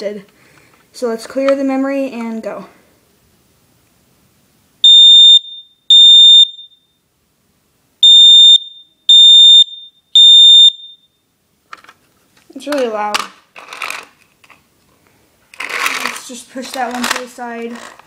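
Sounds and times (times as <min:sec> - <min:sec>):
smoke alarm beeps: 0:04.8 - 0:07.0, 0:08.0 - 0:11.2.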